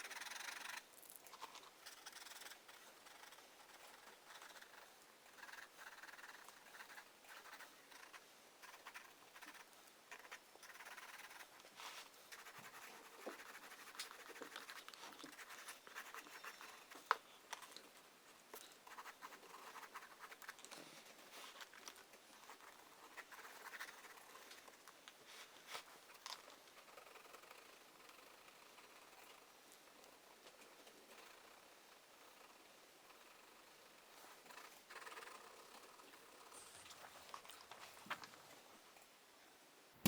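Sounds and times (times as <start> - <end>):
drawing tool scratching paper: 0.0 - 0.9, 1.8 - 11.5, 12.3 - 16.9.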